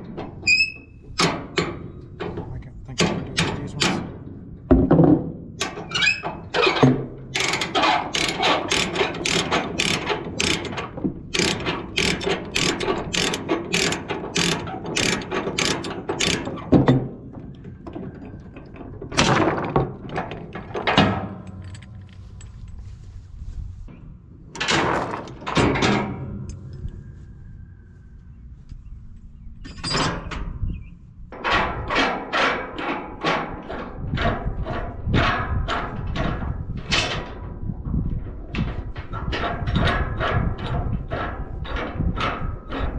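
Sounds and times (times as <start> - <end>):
noisy rattling bursts: 7.3 - 16.8
ratchet pawl clicking: 7.4 - 16.6.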